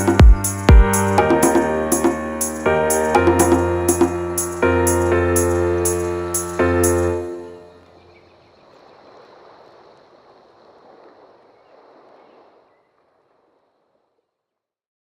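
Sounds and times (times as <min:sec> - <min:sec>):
final song chord ringing: 0:00.0 - 0:07.7.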